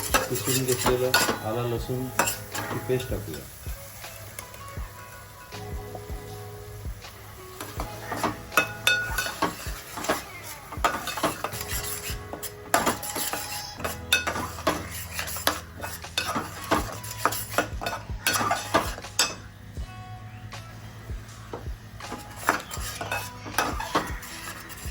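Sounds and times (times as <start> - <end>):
metal spoon scraping frying pan: 0.0 - 3.6, 7.5 - 19.6, 21.5 - 24.9
light sizzle: 0.0 - 24.9.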